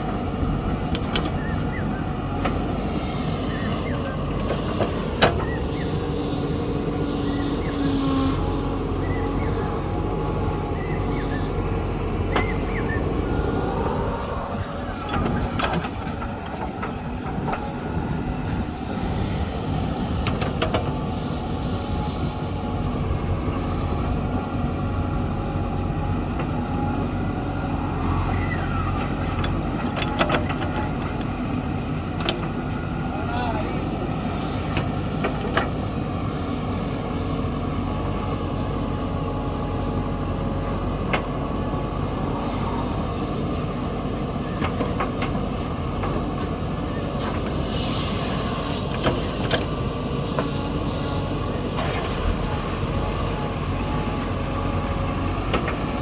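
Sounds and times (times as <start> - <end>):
heavy diesel engines running: 0.0 - 56.0.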